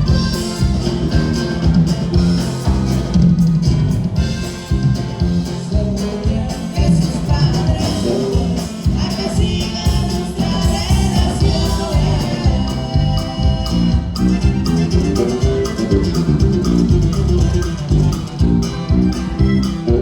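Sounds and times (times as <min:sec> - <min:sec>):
band playing live: 0:00.0 - 0:20.0
bass and drum beat: 0:00.0 - 0:20.0
person singing: 0:05.6 - 0:16.2.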